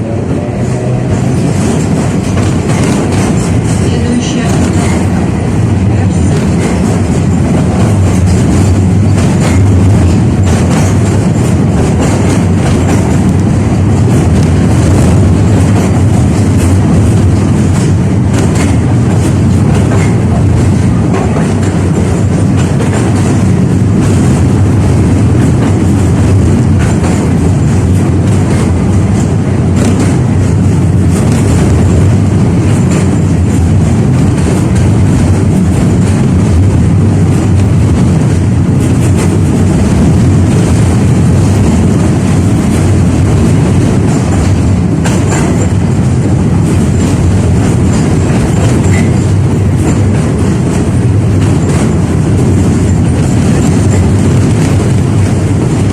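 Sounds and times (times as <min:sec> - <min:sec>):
tram wheels rumbling on rails: 0:00.0 - 0:55.9.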